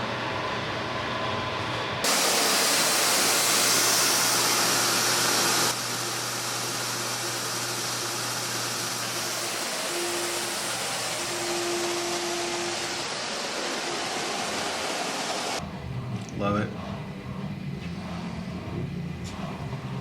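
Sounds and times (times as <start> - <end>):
shop machinery hissing: 2.0 - 15.6
faint machine whine: 3.3 - 20.0.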